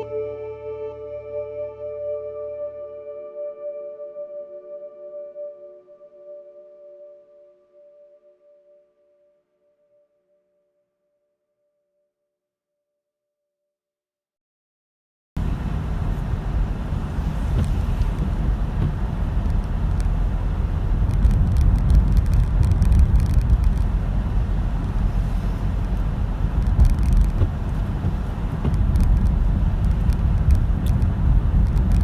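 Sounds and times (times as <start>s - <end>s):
car road and engine rumble: 15.4s - 32.0s.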